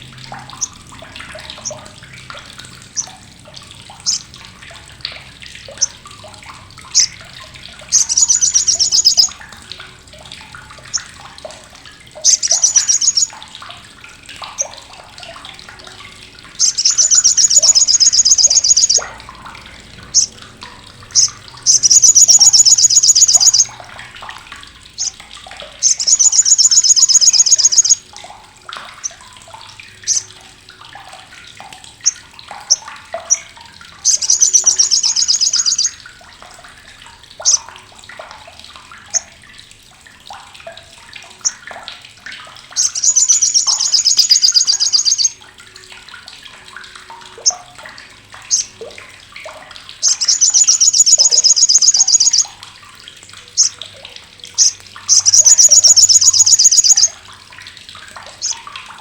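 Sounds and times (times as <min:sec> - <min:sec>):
sunbird rasping chatter: 0:04.1 - 0:04.3, 0:06.9 - 0:07.1, 0:07.9 - 0:09.3, 0:12.2 - 0:13.3, 0:16.6 - 0:19.0, 0:20.1 - 0:20.4, 0:21.1 - 0:23.7, 0:25.8 - 0:28.0, 0:34.1 - 0:35.9, 0:42.8 - 0:45.3, 0:50.0 - 0:52.5, 0:54.6 - 0:57.1
bird chip notes: 0:07.9 - 0:09.4, 0:16.6 - 0:19.1, 0:21.1 - 0:23.7, 0:25.8 - 0:28.0, 0:34.0 - 0:35.9, 0:42.8 - 0:45.3, 0:50.0 - 0:52.5, 0:54.6 - 0:57.1.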